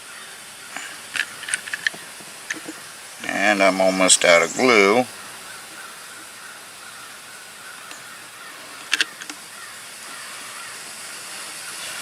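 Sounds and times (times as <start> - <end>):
faint steady hiss: 0.0 - 12.0
sharp clicks of handled objects: 0.8 - 2.8, 8.8 - 9.4.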